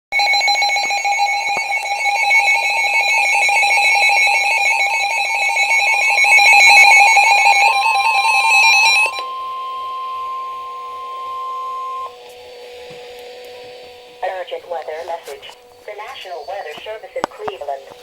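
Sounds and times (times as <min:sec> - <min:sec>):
rapid electronic alarm beeping: 0:00.1 - 0:12.2
steady single-pitch alarm tone: 0:00.1 - 0:18.0.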